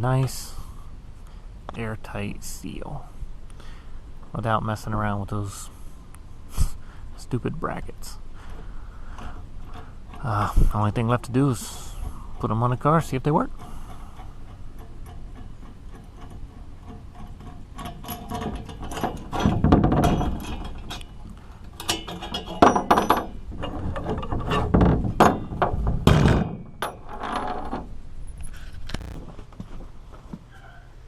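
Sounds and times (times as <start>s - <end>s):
metal parts and tools clinking: 13.6s - 25.6s.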